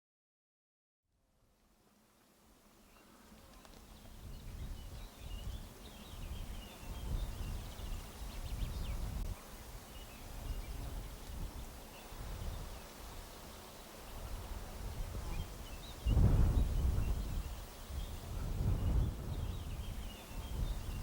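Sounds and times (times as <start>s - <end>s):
wind buffeting microphone: 4.0s - 12.8s, 14.1s - 21.0s.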